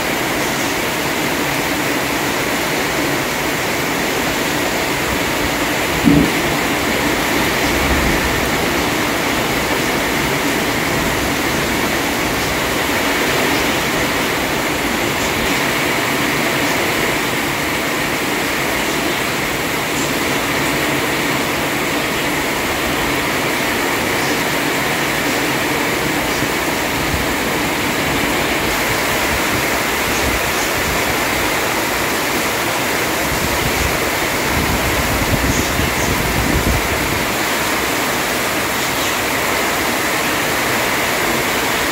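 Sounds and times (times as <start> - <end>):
heavy rain hissing: 0.0 - 41.9
low rumble: 5.8 - 11.4.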